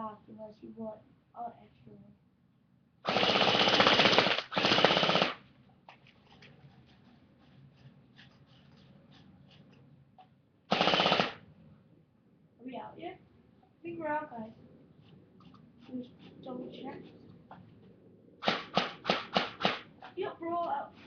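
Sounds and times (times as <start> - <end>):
airsoft gun firing bursts: 3.0 - 5.4, 10.7 - 11.4, 18.4 - 19.9.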